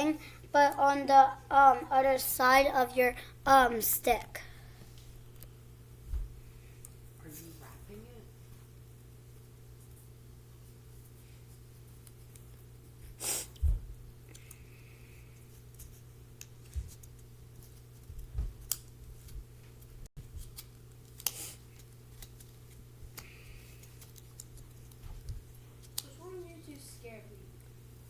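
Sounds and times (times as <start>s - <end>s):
steady low hum: 0.0s - 28.0s
paper and tape rustling: 15.4s - 26.9s.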